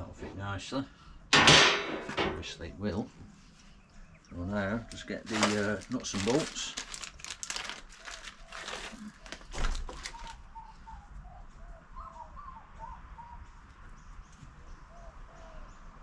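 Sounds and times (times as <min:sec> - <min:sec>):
birds chirping: 0:02.4 - 0:16.0
plastic bag rustling: 0:04.9 - 0:10.4.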